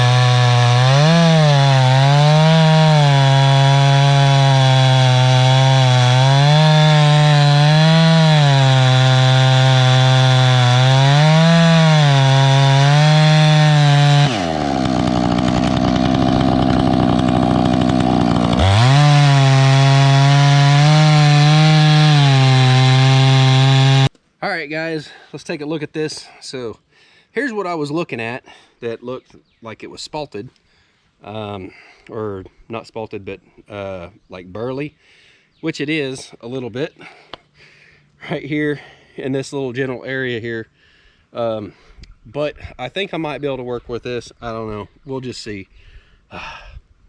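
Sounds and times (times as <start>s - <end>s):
chainsaw cutting wood: 0.0s - 24.1s.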